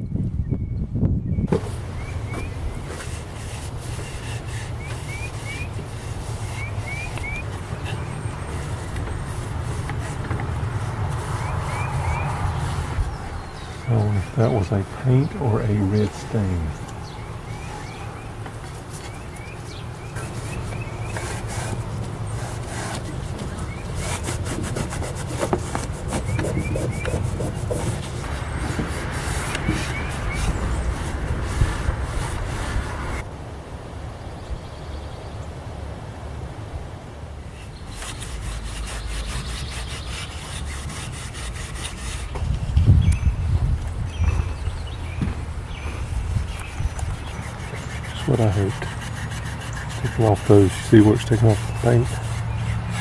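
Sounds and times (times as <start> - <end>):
hand rubbing on wood: 1.5 - 33.2, 37.5 - 42.9, 44.2 - 53.0
scrubbing on wood: 1.5 - 33.2, 37.5 - 42.8, 45.1 - 53.0
small bird chirping: 6.4 - 9.1, 42.2 - 48.3
heavy bumps: 37.8 - 49.1.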